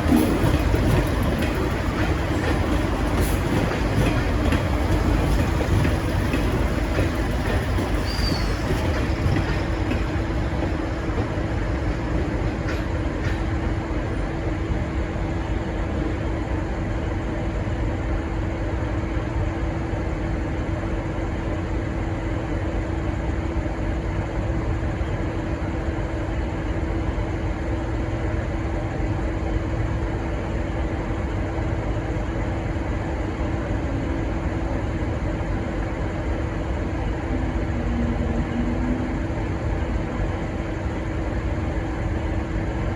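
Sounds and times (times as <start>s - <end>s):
diesel train engines idling: 0.0s - 18.4s, 29.8s - 42.9s.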